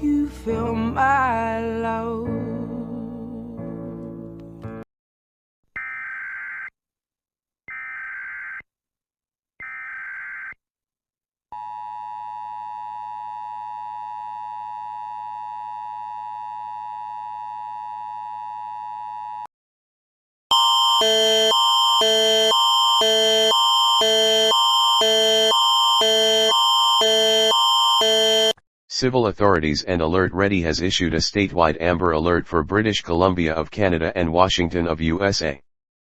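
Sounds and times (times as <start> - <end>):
alternating pitch alert tone: 20.5 - 28.6
two-tone attention signal: 20.5 - 28.6.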